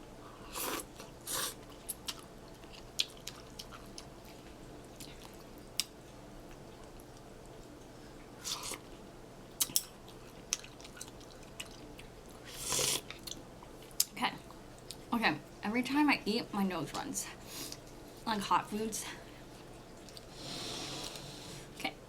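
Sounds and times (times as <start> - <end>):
person chewing: 0.4 - 5.9, 8.4 - 9.0, 9.6 - 14.1.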